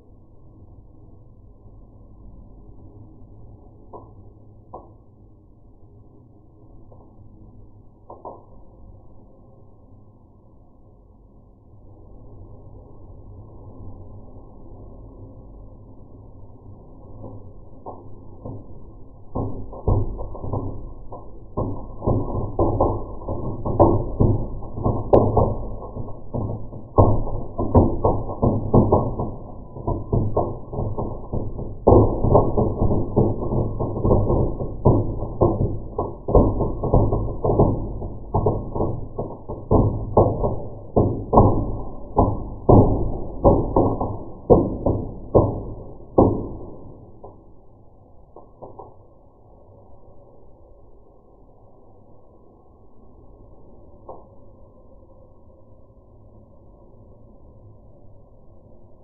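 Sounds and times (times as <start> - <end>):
firework fountain crackling and popping: 17.1 - 47.6.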